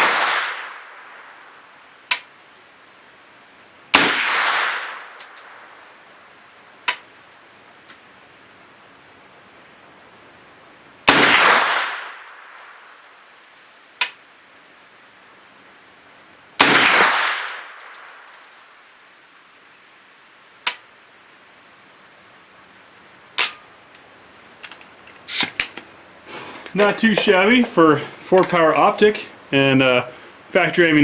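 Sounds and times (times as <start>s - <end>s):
gunshots echoing: 0.0s - 0.9s, 3.9s - 5.5s, 11.1s - 12.2s, 16.6s - 18.0s.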